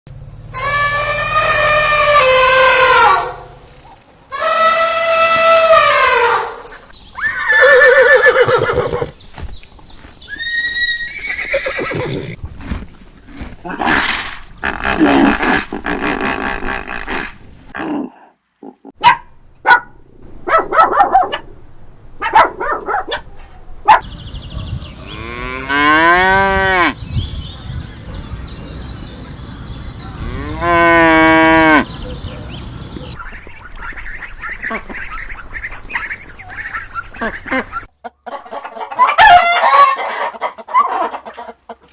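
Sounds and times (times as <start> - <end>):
farm animal calls: 0.5 - 12.4, 23.9 - 41.6.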